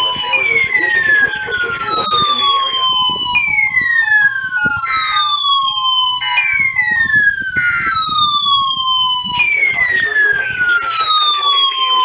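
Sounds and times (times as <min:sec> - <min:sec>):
siren alarm wailing: 0:00.0 - 0:12.0
two-pitch alarm beeps: 0:00.0 - 0:12.0.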